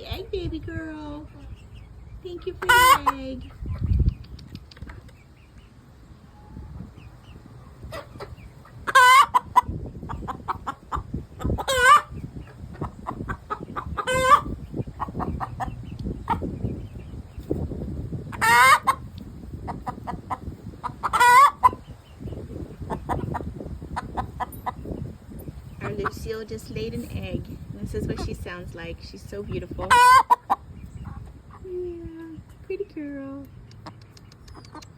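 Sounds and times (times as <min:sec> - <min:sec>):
hen clucking: 0:00.8 - 0:05.7, 0:06.3 - 0:32.6, 0:33.6 - 0:34.9
hen squawking: 0:07.8 - 0:16.5, 0:18.3 - 0:19.0, 0:19.6 - 0:21.9.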